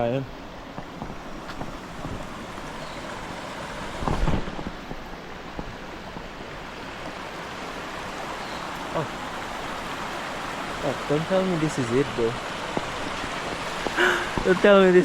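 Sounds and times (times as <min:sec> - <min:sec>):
mountain stream running: 0:00.0 - 0:15.0.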